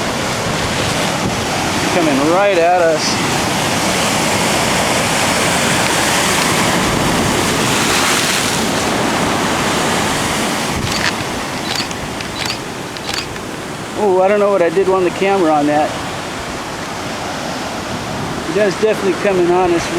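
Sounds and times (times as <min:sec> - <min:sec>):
light clicks: 0:10.8 - 0:13.5.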